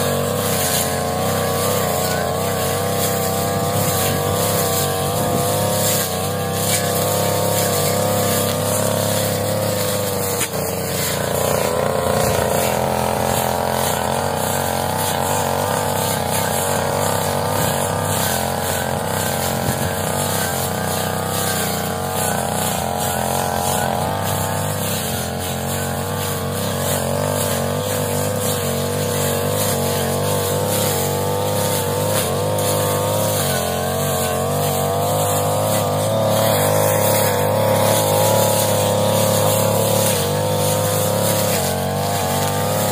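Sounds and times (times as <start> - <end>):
brush cutter engine running: 0.0 - 42.9.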